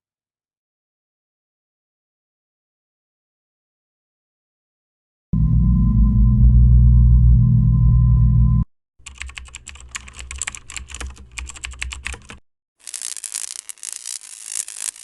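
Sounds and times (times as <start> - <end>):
rapid typing on keyboard: 9.0 - 15.0.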